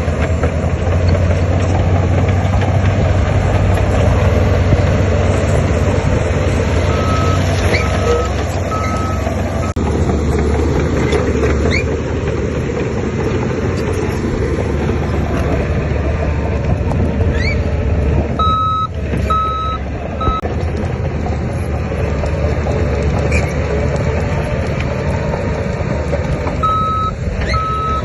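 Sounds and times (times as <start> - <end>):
heavy machinery engine running: 0.0 - 28.0
reversing alarm beeping: 6.9 - 9.8, 18.4 - 20.4, 26.6 - 28.0.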